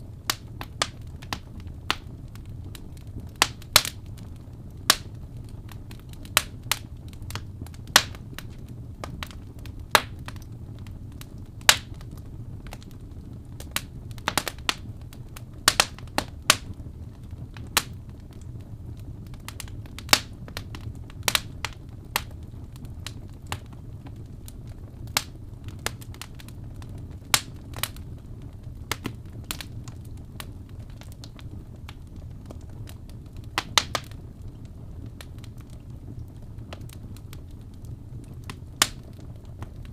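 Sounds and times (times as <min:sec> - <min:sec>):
low rumble of flames: 0:00.0 - 0:39.9
wood fire popping and snapping: 0:00.0 - 0:39.9.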